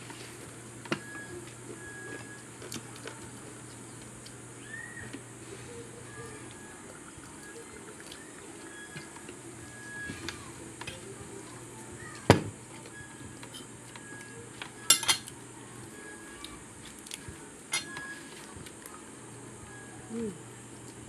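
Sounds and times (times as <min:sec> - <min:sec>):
utensils clinking on a plate: 0:13.4 - 0:14.0, 0:14.6 - 0:15.4, 0:17.7 - 0:18.1.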